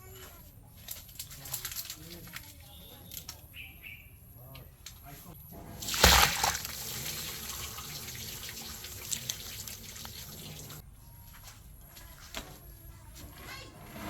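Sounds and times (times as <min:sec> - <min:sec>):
water dripping: 0:05.8 - 0:10.8
water running and splashing: 0:05.8 - 0:10.8.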